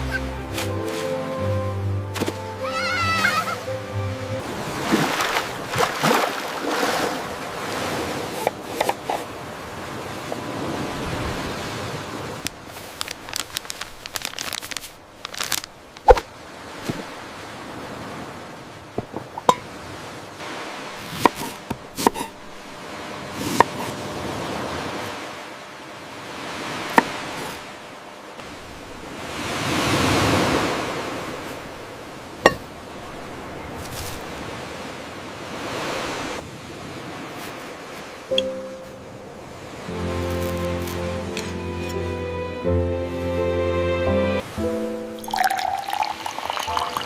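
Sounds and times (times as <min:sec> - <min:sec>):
ocean surf: 0:00.0 - 0:14.1, 0:14.9 - 0:47.0
rain: 0:12.3 - 0:16.1.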